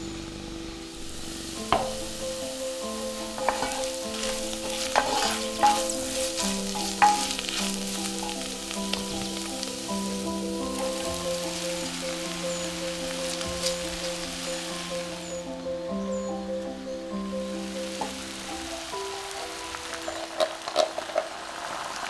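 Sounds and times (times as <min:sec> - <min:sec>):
food sizzling in a pot: 0:00.0 - 0:22.0
spoon knocking against pot: 0:03.3 - 0:09.4.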